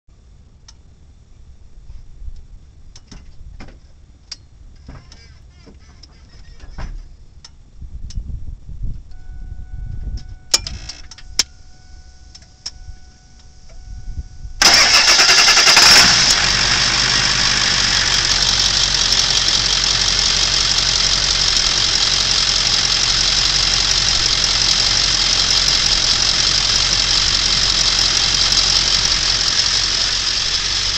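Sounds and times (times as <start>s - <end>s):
faint steady tone: 9.1s - 14.6s
engine cranking and idling: 14.6s - 30.9s.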